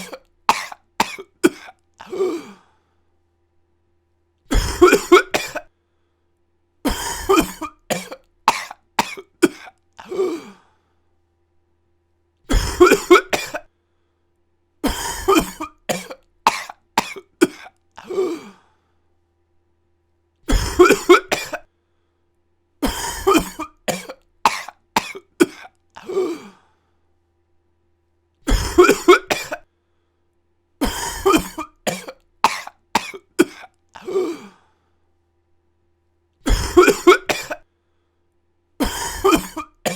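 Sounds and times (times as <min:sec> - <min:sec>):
person coughing: 0:00.0 - 0:02.7, 0:04.5 - 0:05.7, 0:06.9 - 0:10.6, 0:12.5 - 0:13.7, 0:14.8 - 0:18.6, 0:20.5 - 0:21.7, 0:22.8 - 0:26.6, 0:28.5 - 0:29.7, 0:30.8 - 0:34.6, 0:36.4 - 0:37.7, 0:38.8 - 0:39.9.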